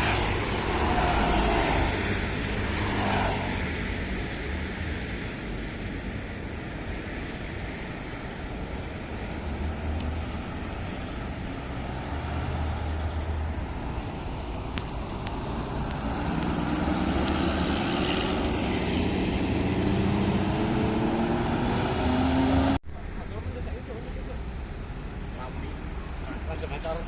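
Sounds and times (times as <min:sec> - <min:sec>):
traffic noise: 0:00.0 - 0:27.0
heavy vehicle engine accelerating: 0:15.0 - 0:22.8.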